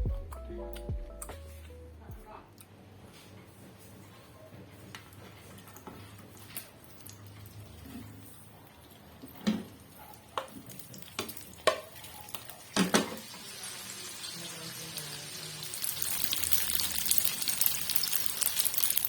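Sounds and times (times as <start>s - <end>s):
frying sizzle: 9.0s - 19.0s.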